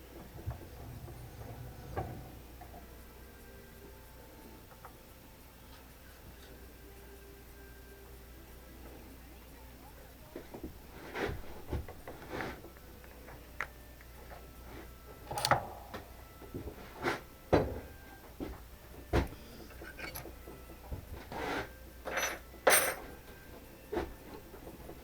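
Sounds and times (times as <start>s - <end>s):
tools and parts knocking and clattering: 10.5s - 25.0s.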